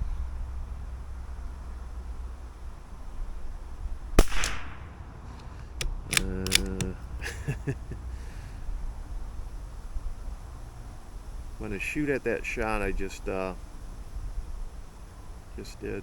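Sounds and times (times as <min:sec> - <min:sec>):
rifle shot: 0:04.2 - 0:06.9
rifle bolt clicking: 0:04.2 - 0:07.0
rifle bolt scraping: 0:04.2 - 0:07.0.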